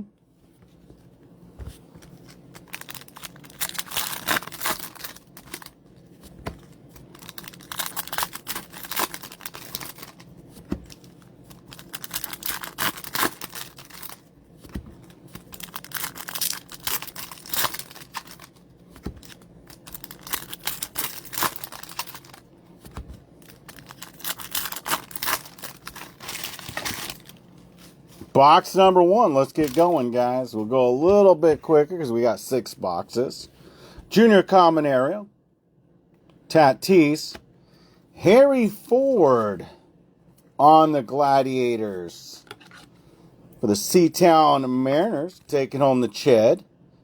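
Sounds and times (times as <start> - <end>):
foil wrapping tearing and crinkling: 2.6 - 5.7, 7.1 - 10.2, 10.9 - 14.2, 15.5 - 18.5, 19.2 - 22.4, 23.4 - 27.4.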